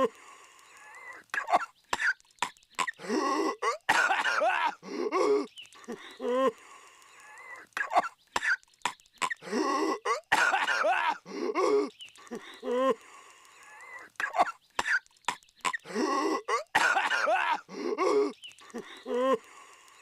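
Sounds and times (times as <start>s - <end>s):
cartoon character coughing and hacking: 1.4s - 2.2s, 2.8s - 5.5s, 7.8s - 8.6s, 9.2s - 11.9s, 14.2s - 15.0s, 15.7s - 18.4s.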